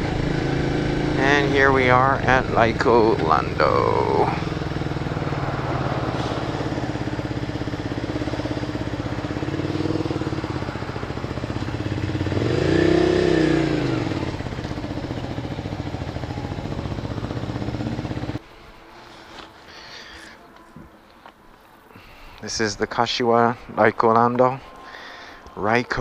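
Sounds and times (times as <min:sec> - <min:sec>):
motorcycle engine running: 0:00.0 - 0:18.4.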